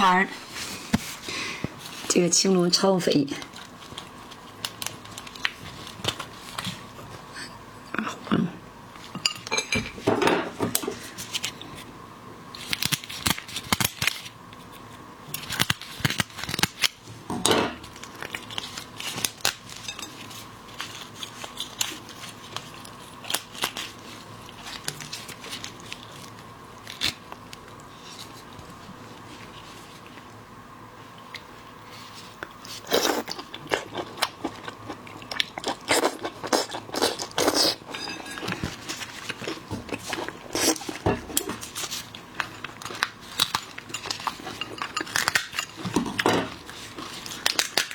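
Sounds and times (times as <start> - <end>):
lobster shell cracking: 12.6 - 14.4, 15.3 - 17.0, 33.3 - 47.9
utensils clattering: 37.9 - 38.7.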